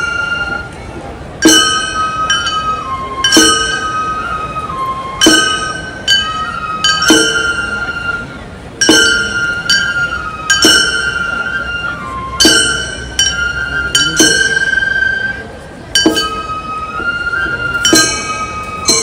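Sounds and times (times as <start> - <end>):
bamboo flute playing high notes: 0.0 - 19.0
small brass gongs struck: 16.0 - 16.5.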